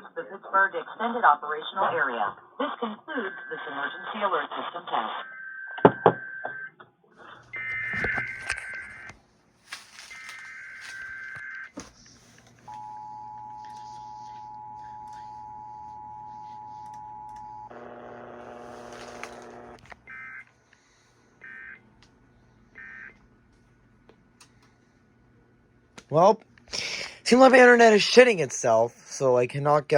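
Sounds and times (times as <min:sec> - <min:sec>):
harsh buzzy sound: 0:17.7 - 0:19.8.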